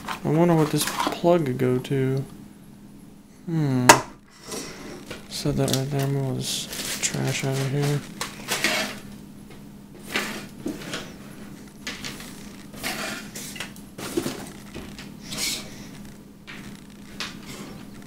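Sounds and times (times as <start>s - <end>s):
faint hum: 0.0s - 18.0s
packaging rustling: 5.0s - 9.2s, 10.1s - 18.0s.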